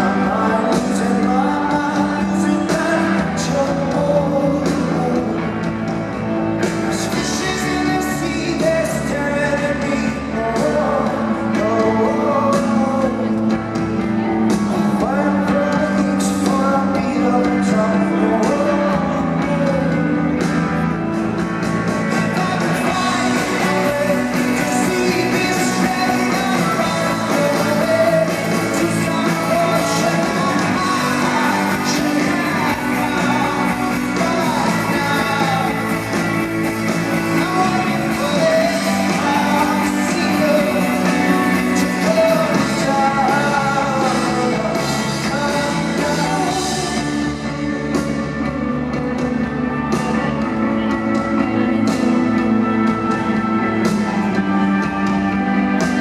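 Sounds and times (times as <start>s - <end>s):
lead vocals singing: 0.0s - 56.0s
rock band playing live: 0.0s - 56.0s.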